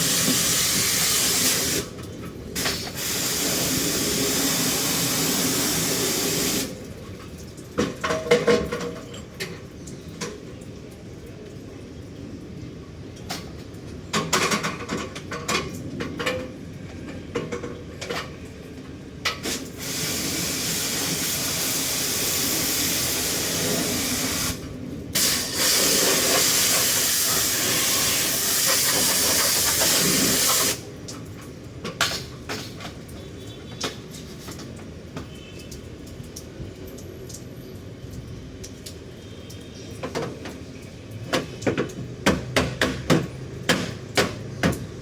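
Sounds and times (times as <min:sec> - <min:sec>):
water jetting from spray nozzle: 0:00.0 - 0:06.9, 0:19.4 - 0:31.0
parts knocking and clattering: 0:14.1 - 0:18.3.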